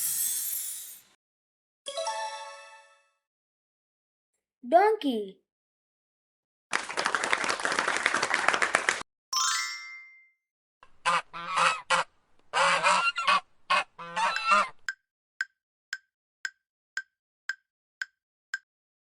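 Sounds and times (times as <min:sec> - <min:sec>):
goose honking: 0:10.9 - 0:14.9
donkey braying: 0:12.6 - 0:14.9.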